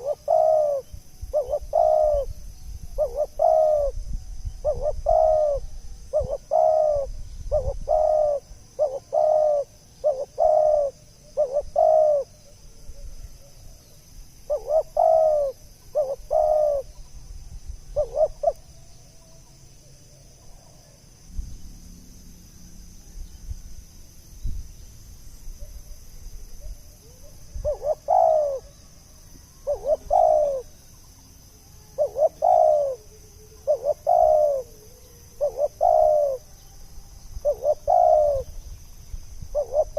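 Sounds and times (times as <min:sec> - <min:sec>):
dove cooing: 0:00.0 - 0:02.4, 0:03.0 - 0:04.0, 0:04.6 - 0:13.5, 0:14.5 - 0:17.0, 0:17.9 - 0:19.4, 0:26.6 - 0:28.9, 0:29.6 - 0:30.8, 0:31.8 - 0:36.6, 0:37.4 - 0:38.6, 0:39.5 - 0:39.9.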